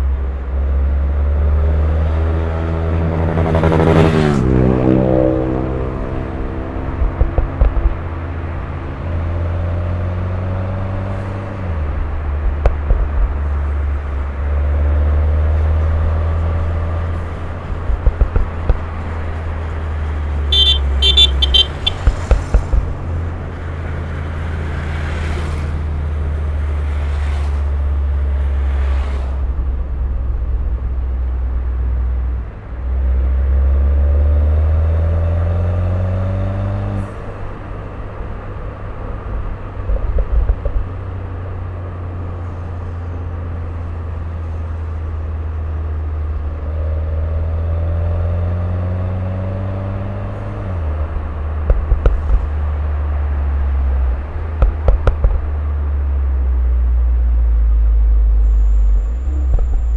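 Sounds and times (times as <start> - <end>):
car engine accelerating: 0.6 - 59.9
exhaust pops crackling: 15.6 - 24.2, 54.4 - 55.7
short car horn toot: 20.5 - 22.3.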